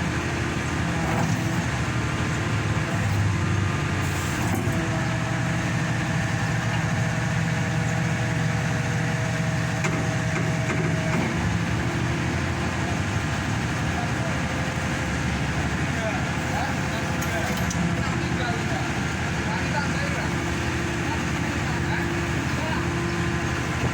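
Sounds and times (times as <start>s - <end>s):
pile driver engine running: 0.0s - 23.9s.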